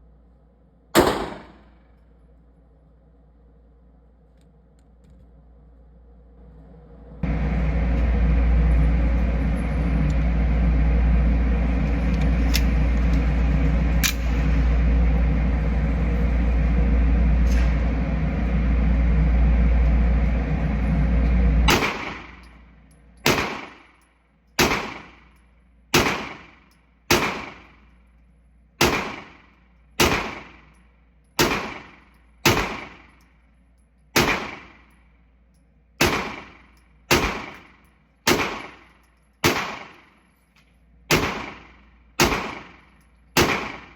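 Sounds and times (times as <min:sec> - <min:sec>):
handgun shots: 0:01.0 - 0:01.8, 0:23.3 - 0:23.8, 0:24.6 - 0:25.2, 0:26.0 - 0:26.5, 0:27.1 - 0:27.7, 0:28.8 - 0:29.4, 0:30.0 - 0:30.5, 0:31.4 - 0:33.1, 0:34.2 - 0:34.9, 0:36.0 - 0:37.6, 0:38.3 - 0:40.1, 0:41.1 - 0:43.9
loud low rumble: 0:06.2 - 0:23.9.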